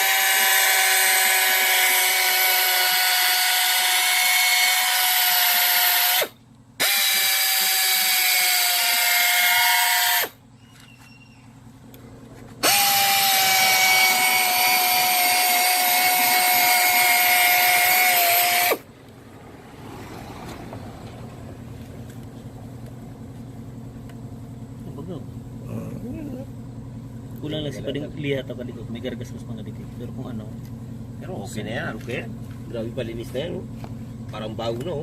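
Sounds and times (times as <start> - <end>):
power tool whining: 0.0 - 11.3, 12.6 - 18.9.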